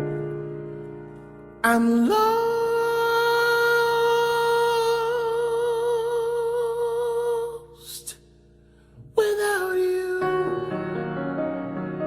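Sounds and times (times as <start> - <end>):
person singing a long note: 1.6 - 7.7.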